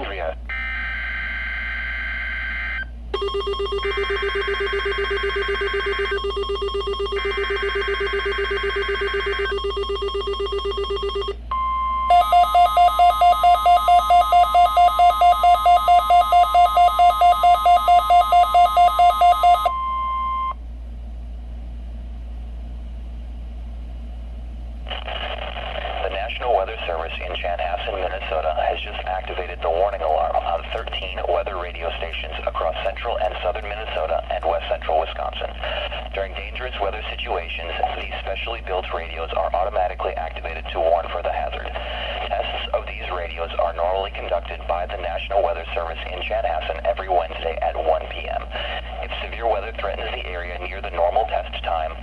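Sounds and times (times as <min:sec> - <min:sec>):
steady warning alarm tone: 0:00.5 - 0:20.6
fast pulsing alert beeps: 0:03.2 - 0:11.4, 0:12.1 - 0:20.5.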